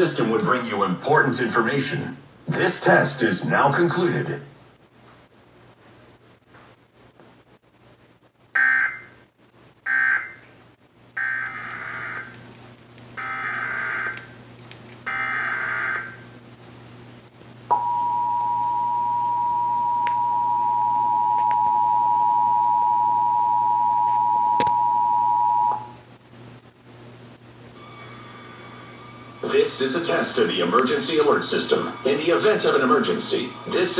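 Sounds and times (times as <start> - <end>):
steady two-tone attention signal: 17.7 - 26.0.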